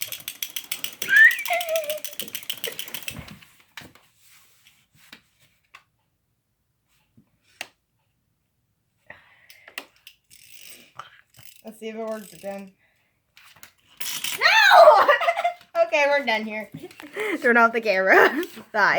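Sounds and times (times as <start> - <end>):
wind-up toy clattering: 0.0 - 3.4, 9.8 - 12.8, 13.8 - 15.6
scattered clicks and knocks: 0.0 - 4.0.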